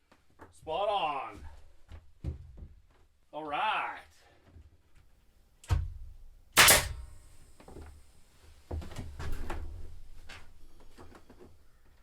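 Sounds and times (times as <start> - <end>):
sharp bang with ring: 6.6 - 7.2.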